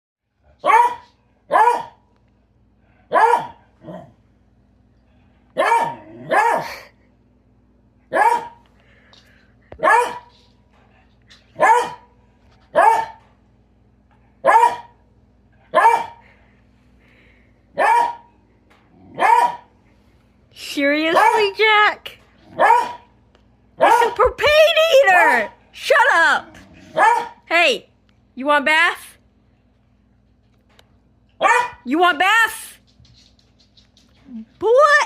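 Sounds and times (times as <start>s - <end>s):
faint steady hum: 0.2s - 35.0s
dog barking: 0.6s - 2.0s, 3.1s - 3.6s, 5.6s - 6.8s, 8.1s - 8.6s, 9.8s - 10.3s, 11.6s - 12.1s, 12.7s - 13.2s, 14.4s - 15.0s, 15.7s - 16.2s, 17.8s - 18.3s, 19.2s - 19.7s, 21.1s - 21.6s, 22.5s - 23.1s, 23.8s - 24.2s, 26.9s - 27.5s, 31.4s - 31.9s.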